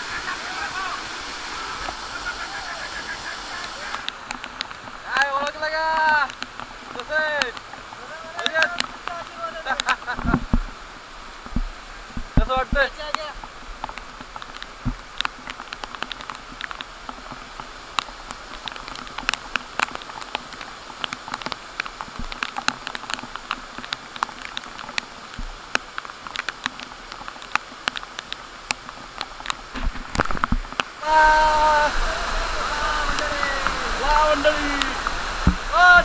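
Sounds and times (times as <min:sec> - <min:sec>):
loud steady rushing noise: 0:00.0 - 0:04.1
raindrops pattering: 0:00.0 - 0:36.0
steady hiss: 0:00.0 - 0:36.0.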